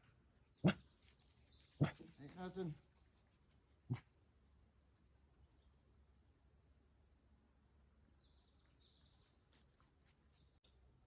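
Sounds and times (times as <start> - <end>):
faint insects droning: 0.0 - 11.0.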